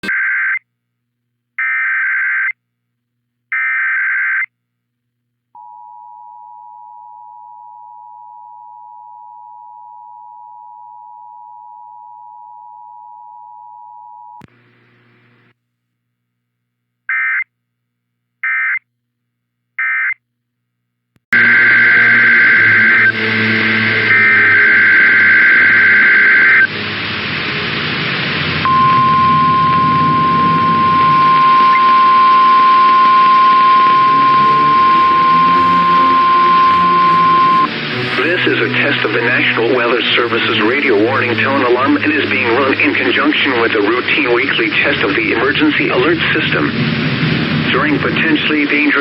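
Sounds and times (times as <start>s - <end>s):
two-tone attention signal: 21.4s - 27.7s, 28.5s - 45.5s
shrill digital header bursts: 21.4s - 48.6s
static-laden transmission: 21.4s - 49.0s
short end-of-message bursts: 32.8s - 46.8s.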